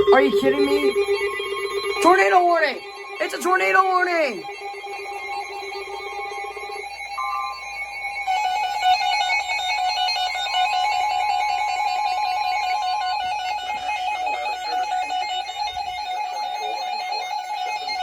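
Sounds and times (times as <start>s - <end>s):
warbling electronic alert: 7.2s - 8.0s
steady high tone: 7.2s - 8.4s.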